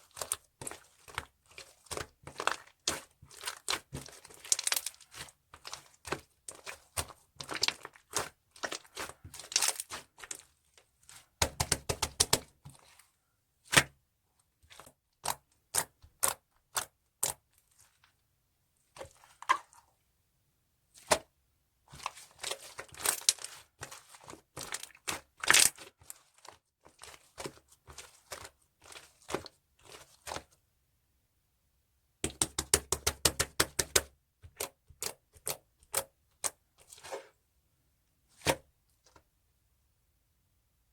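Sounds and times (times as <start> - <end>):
hands squishing slime: 0.0 - 14.0, 14.6 - 18.2, 20.9 - 21.3, 21.9 - 30.5, 32.2 - 37.3.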